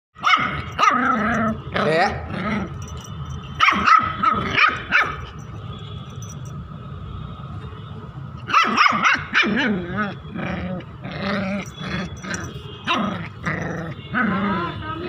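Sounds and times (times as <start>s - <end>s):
puppy barking: 0.2s - 2.1s, 3.6s - 5.4s, 8.5s - 10.2s, 11.6s - 14.7s.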